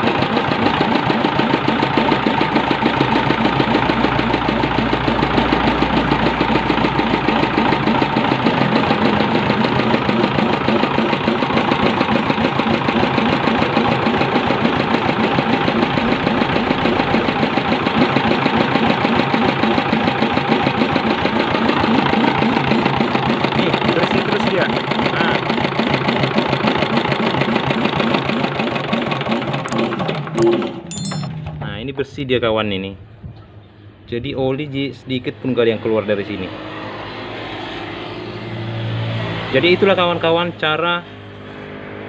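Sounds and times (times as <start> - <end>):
small diesel engine running: 0.0 - 31.9.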